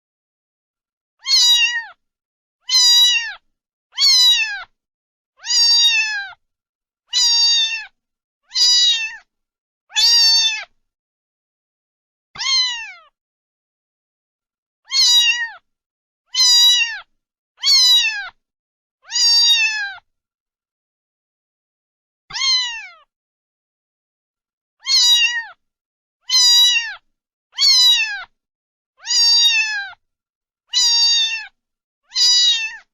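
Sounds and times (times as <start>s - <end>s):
cat meowing: 1.2s - 2.0s, 2.6s - 4.7s, 5.4s - 6.4s, 7.1s - 9.3s, 9.9s - 10.7s, 12.4s - 13.2s, 14.9s - 15.6s, 16.3s - 18.4s, 19.0s - 20.0s, 22.3s - 23.1s, 24.8s - 25.6s, 26.2s - 27.0s, 27.6s - 28.3s, 29.0s - 30.0s, 30.7s - 32.9s.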